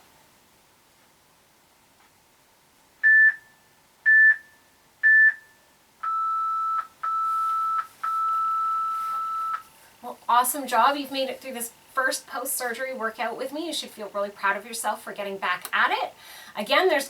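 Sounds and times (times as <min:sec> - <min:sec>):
longer lower timer tones: 0:03.0 - 0:09.6.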